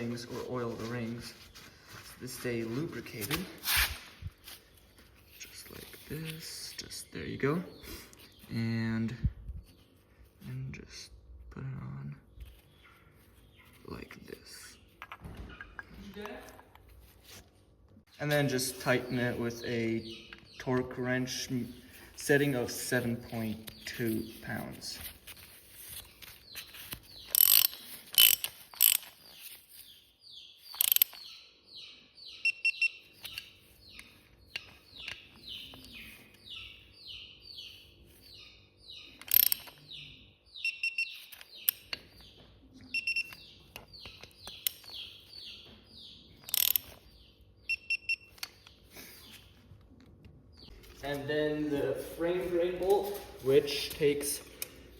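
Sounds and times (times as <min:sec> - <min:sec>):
torque wrench ratchet clicking: 0:27.3 - 0:29.1, 0:30.8 - 0:31.2, 0:39.2 - 0:39.7, 0:46.5 - 0:46.9.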